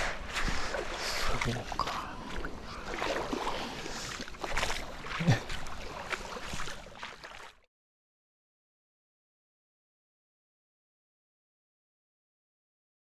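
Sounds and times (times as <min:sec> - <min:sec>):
small waves washing on beach: 0:00.0 - 0:07.7.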